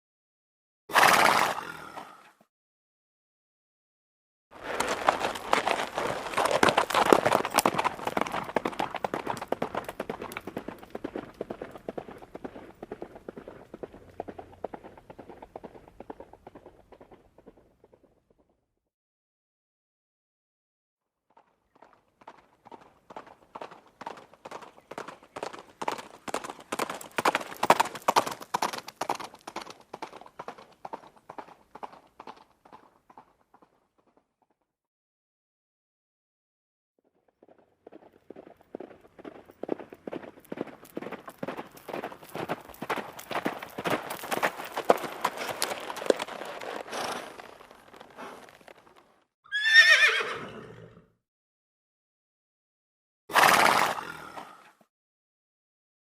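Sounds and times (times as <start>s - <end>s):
horses galloping on hard ground: 0.9s - 2.0s, 4.6s - 18.7s, 21.3s - 34.6s, 37.0s - 50.4s, 53.3s - 54.6s.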